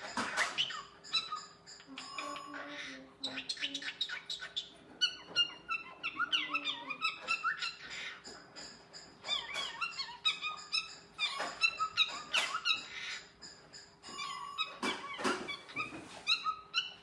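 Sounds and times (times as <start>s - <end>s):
cockatiel chirps and whistles: 14.1s - 17.0s.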